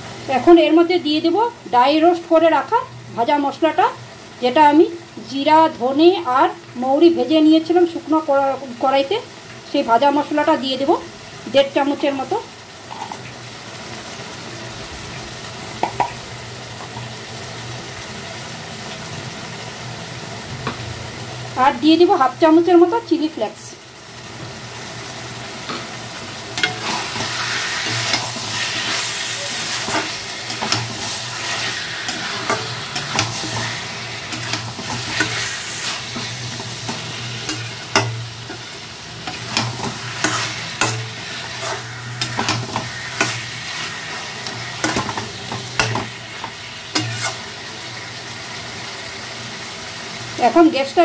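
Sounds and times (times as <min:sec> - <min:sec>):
chicken sizzling in hot oil: 0:00.0 - 0:51.0
spatula scraping: 0:26.6 - 0:47.5.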